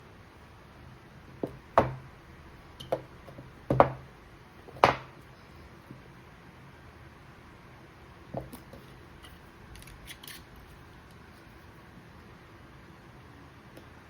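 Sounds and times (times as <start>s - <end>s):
knocks and taps on a box: 2.9s - 4.0s, 4.7s - 5.1s.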